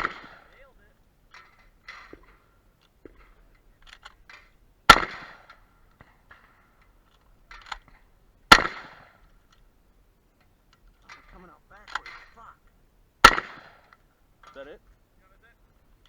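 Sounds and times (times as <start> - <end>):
shotgun shots: 0.0 - 4.3, 4.9 - 6.7, 7.6 - 9.4, 11.1 - 12.6, 13.2 - 14.8
gun handling clicks: 1.3 - 9.7, 10.4 - 15.0.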